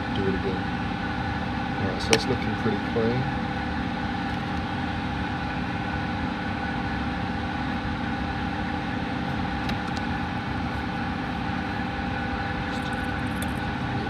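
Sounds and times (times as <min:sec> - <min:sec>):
machine hum: 0:00.0 - 0:14.0.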